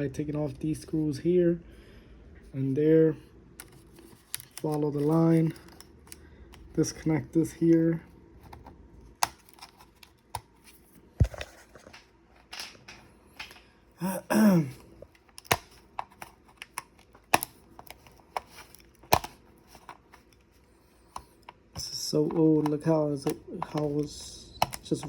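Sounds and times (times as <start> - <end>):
plastic laptop parts clicking: 3.6 - 6.8, 8.4 - 10.7, 15.0 - 20.5, 21.1 - 25.0
short vocal sound: 14.0 - 14.8.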